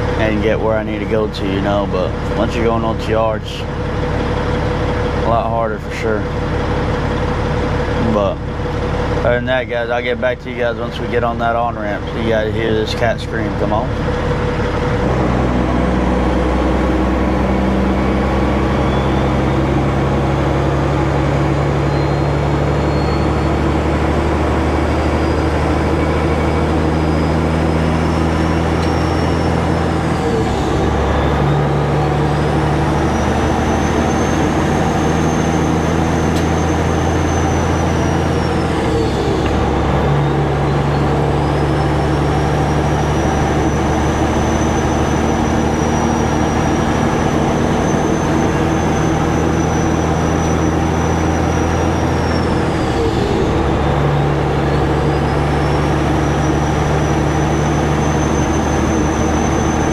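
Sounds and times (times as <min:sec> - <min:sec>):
diesel truck engine pulling under load: 0:00.0 - 0:59.9
high turbo whistle: 0:15.5 - 0:59.9.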